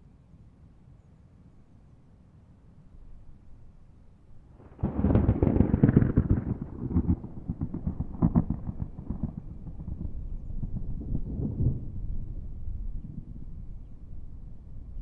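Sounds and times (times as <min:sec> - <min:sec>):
thunderclap with rolling rumble: 0:04.6 - 0:15.0.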